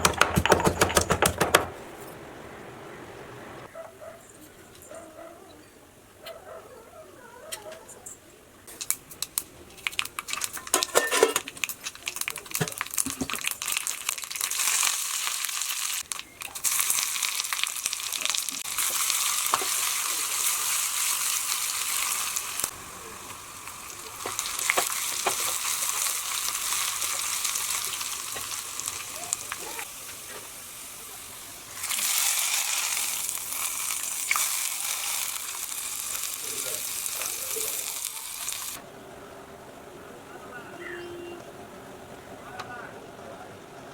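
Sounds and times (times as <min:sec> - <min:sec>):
oil crackling pops: 0:08.7 - 0:20.3, 0:21.3 - 0:30.6, 0:31.8 - 0:38.8
food sizzling in hot oil: 0:08.7 - 0:38.9.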